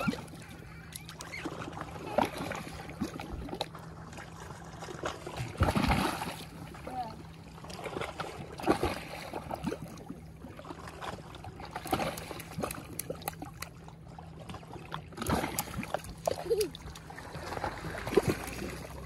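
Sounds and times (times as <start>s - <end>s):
water lapping at rocky shore: 0.0s - 19.0s.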